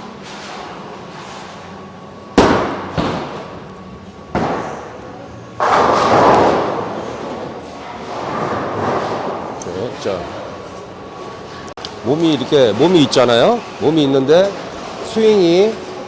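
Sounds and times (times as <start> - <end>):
bowling pins crashing: 5.6 - 7.4.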